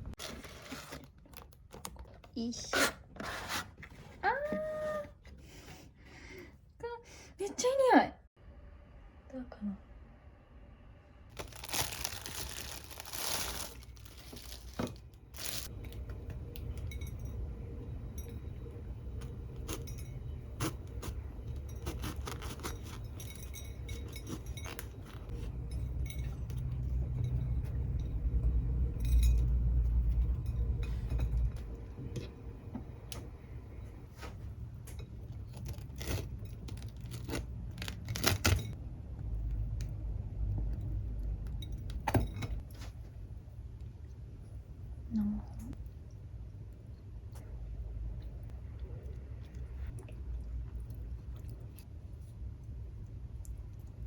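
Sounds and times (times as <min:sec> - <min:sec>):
low rumble: 0:23.1 - 0:34.1.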